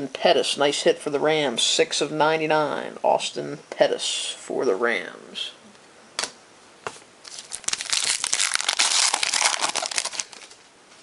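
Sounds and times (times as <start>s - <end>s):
plastic wrapper crinkling and tearing: 7.2s - 10.6s.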